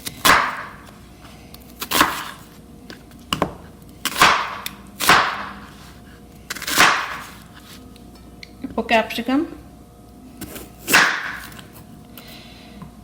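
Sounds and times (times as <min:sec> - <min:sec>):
knife cutting onion on board: 0:00.1 - 0:01.0, 0:01.8 - 0:02.5, 0:04.0 - 0:05.9, 0:06.5 - 0:07.6, 0:10.4 - 0:11.7.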